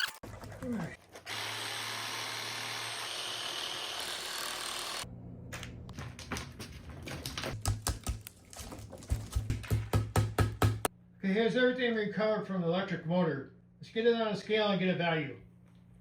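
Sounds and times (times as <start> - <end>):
power tool running: 1.2 - 5.1.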